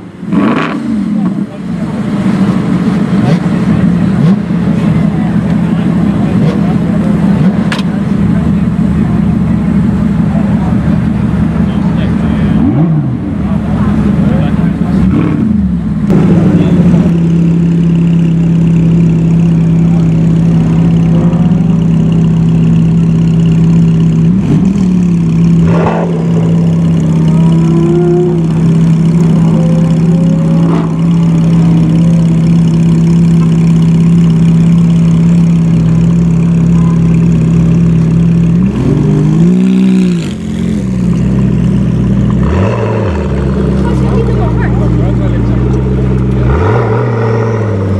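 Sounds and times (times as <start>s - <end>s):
car engine idling and revving: 0.0s - 47.9s.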